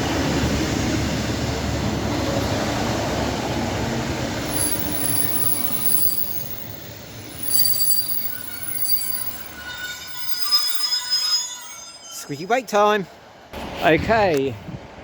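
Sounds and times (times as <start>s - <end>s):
train rumble: 0.0s - 10.8s
train brakes squealing: 4.4s - 12.6s.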